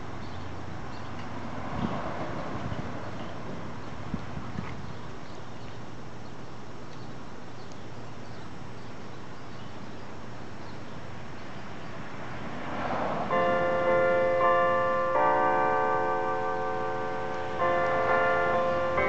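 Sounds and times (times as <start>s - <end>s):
church bell ringing: 13.3s - 19.0s.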